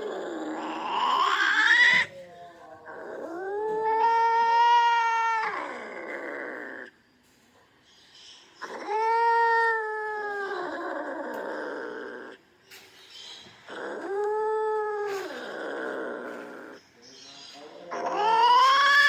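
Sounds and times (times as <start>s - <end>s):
angry cat yowling: 0.0s - 2.1s, 2.9s - 6.9s, 8.6s - 12.4s, 13.7s - 16.8s, 17.9s - 19.0s.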